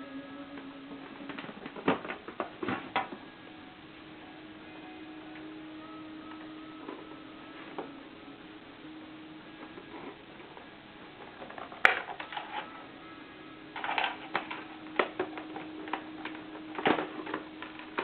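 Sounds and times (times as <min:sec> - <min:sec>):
clicks and crackles: 0:09.6 - 0:12.8, 0:13.7 - 0:18.0
toy turntable humming: 0:09.6 - 0:18.0.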